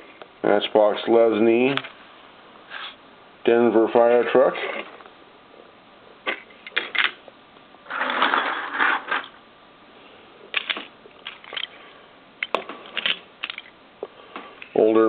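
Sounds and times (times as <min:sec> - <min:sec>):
toy cars clicking and clinking: 0:12.4 - 0:13.7.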